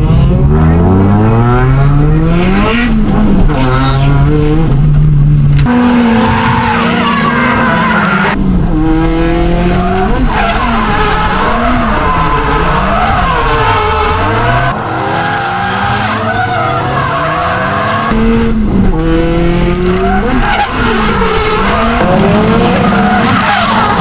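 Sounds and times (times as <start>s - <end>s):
car engine revving hard: 0.0s - 5.0s, 5.6s - 24.0s
tyre squeal: 9.6s - 18.1s, 19.7s - 22.0s.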